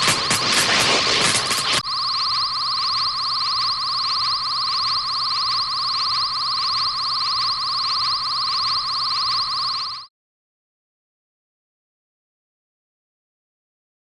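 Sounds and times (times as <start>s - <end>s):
pulsing electronic buzzing hum: 1.3s - 10.1s.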